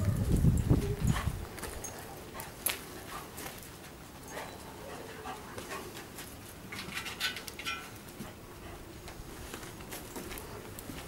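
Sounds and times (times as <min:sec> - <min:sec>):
light clicks and scuffs: 0:00.7 - 0:08.4
dog panting: 0:01.0 - 0:03.5, 0:04.2 - 0:06.1, 0:08.2 - 0:08.9.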